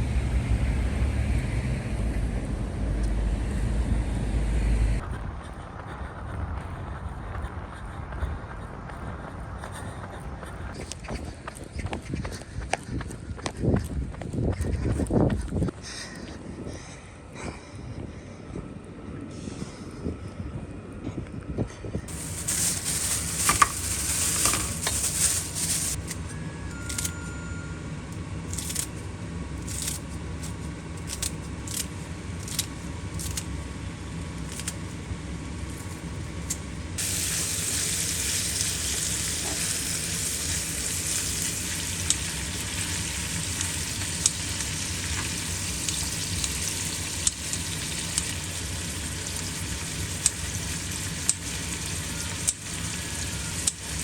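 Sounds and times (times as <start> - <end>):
food sizzling in a frying pan: 22.1 - 26.0, 37.0 - 54.0.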